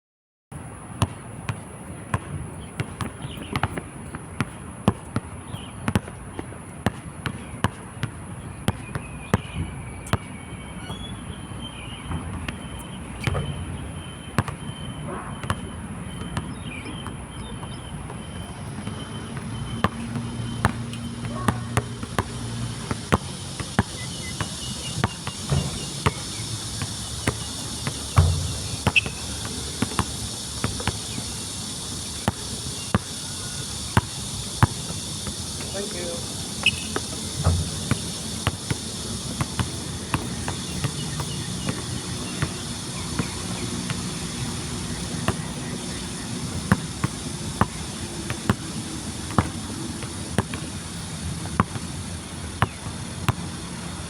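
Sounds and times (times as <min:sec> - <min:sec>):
basketball bouncing on hard court: 0:01.0 - 0:11.1, 0:11.8 - 0:14.6, 0:15.4 - 0:51.9, 0:52.6 - 0:53.0
high insect drone: 0:12.6 - 0:54.0
insect buzzing: 0:19.5 - 0:51.3.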